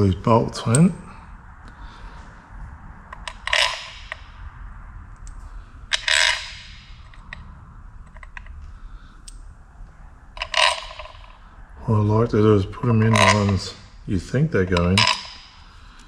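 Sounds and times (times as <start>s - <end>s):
metal bolts clinking: 3.1s - 4.3s, 5.9s - 7.4s, 10.4s - 11.4s, 12.9s - 13.9s, 14.7s - 15.6s.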